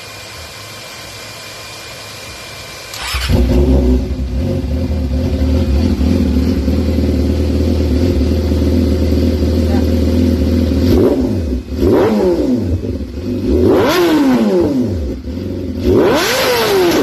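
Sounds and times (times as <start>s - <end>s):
motorcycle engine starting and idling: 0.0s - 17.0s.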